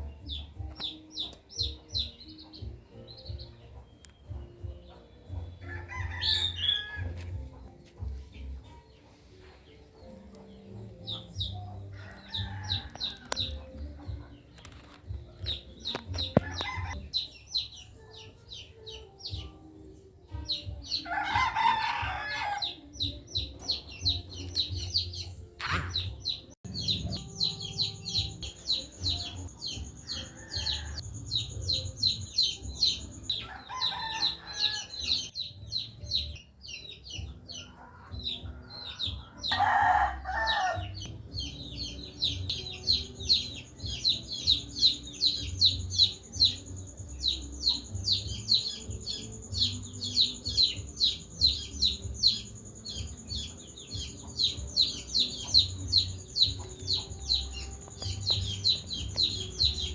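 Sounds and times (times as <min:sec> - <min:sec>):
small birds chirping: 0:00.0 - 0:59.9
rooster crowing: 0:05.6 - 0:07.2, 0:11.9 - 0:13.6, 0:21.1 - 0:22.8, 0:30.0 - 0:31.1, 0:33.3 - 0:35.2, 0:39.3 - 0:41.0.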